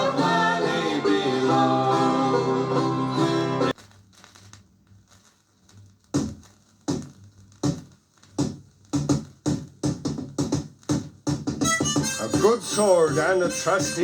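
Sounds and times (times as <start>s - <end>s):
record surface noise: 3.7s - 14.0s
sharp percussive knocks: 6.2s - 12.6s.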